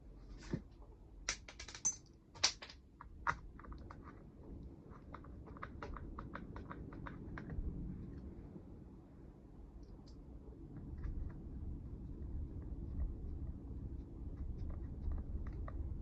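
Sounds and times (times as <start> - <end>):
hand tools and plastic parts clicking: 1.3 - 4.2.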